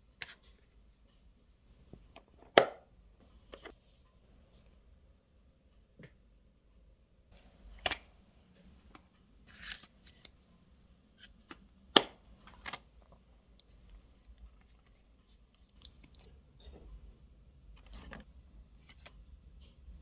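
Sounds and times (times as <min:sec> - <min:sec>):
plastic sleeve rustling: 0:09.5 - 0:10.4, 0:12.4 - 0:16.3.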